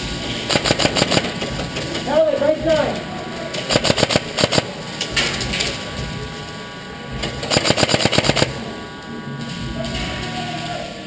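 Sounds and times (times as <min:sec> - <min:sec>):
airsoft gun firing bursts: 0:00.5 - 0:01.6, 0:03.7 - 0:04.8, 0:07.4 - 0:08.6.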